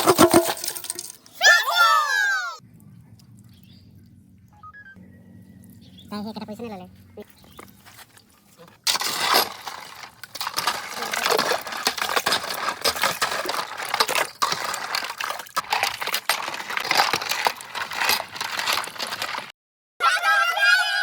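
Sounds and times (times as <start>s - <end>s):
objects clattering and clinking: 0.0s - 1.4s, 8.8s - 19.5s.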